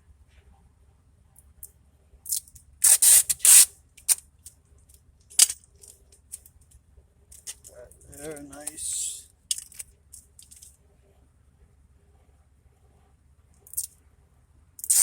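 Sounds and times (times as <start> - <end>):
tape ripping off a roll: 2.8 - 3.7.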